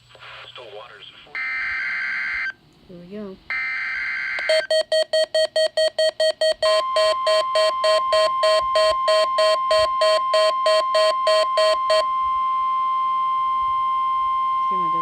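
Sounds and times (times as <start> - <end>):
steady warning alarm tone: 1.4 - 2.5, 3.5 - 15.0.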